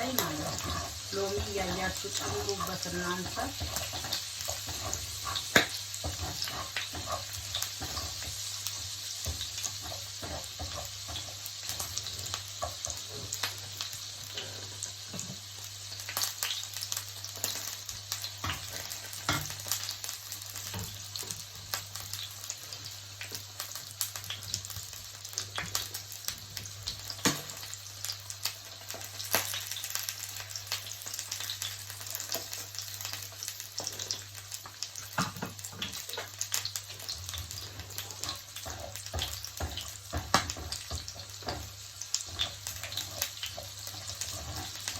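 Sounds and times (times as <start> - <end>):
fish sizzling in a pan: 0.0 - 44.9.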